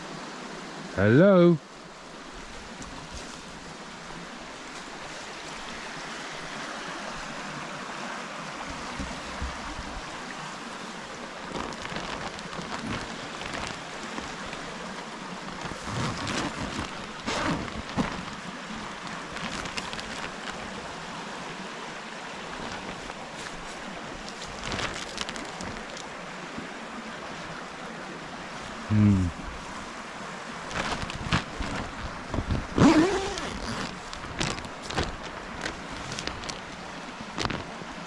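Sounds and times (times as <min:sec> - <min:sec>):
rustles and knocks: 0:08.6 - 0:10.0, 0:11.5 - 0:14.6, 0:15.5 - 0:20.6, 0:22.6 - 0:26.1, 0:30.7 - 0:36.7, 0:37.3 - 0:37.8.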